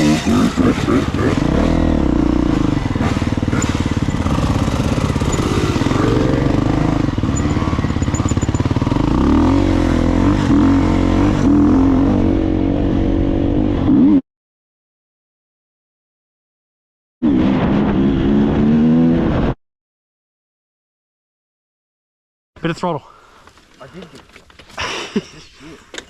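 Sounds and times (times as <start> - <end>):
dirt bike engine revving: 0.0 - 14.2.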